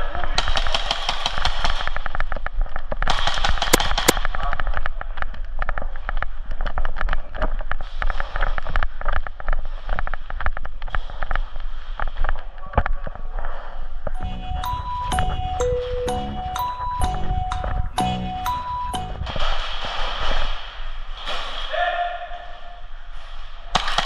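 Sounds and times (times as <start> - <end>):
airsoft guns firing: 0.3 - 2.2, 3.0 - 4.4, 23.8 - 24.0
pellets cracking against hard surfaces: 23.8 - 24.0.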